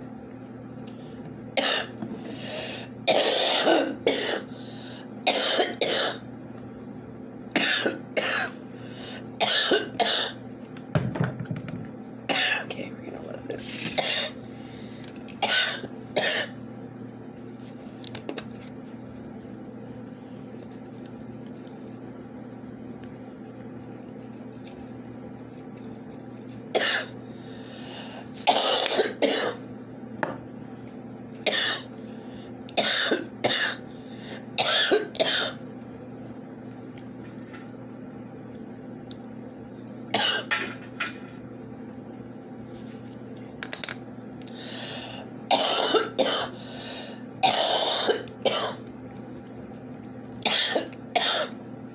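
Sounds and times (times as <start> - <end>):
steady low hum: 0.0 - 51.9
person coughing harshly: 1.6 - 2.0, 3.1 - 4.5, 5.3 - 6.2, 7.6 - 8.6, 9.4 - 10.4, 12.3 - 12.7, 13.9 - 14.4, 15.4 - 16.6, 26.7 - 27.2, 28.4 - 29.6, 31.5 - 31.9, 32.8 - 33.8, 34.6 - 35.6, 40.1 - 40.7, 45.5 - 46.6, 47.4 - 48.8, 50.4 - 51.5.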